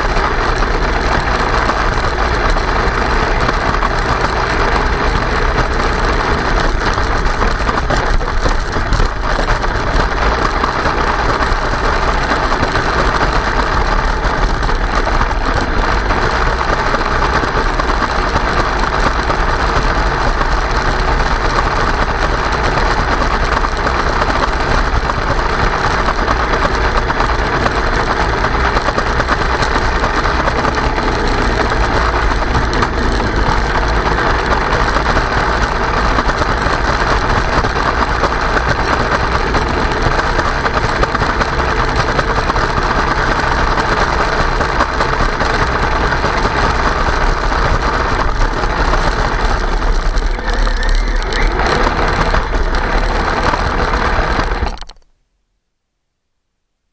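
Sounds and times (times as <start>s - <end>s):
toy vehicle motor and tracks: 11.3s - 55.0s.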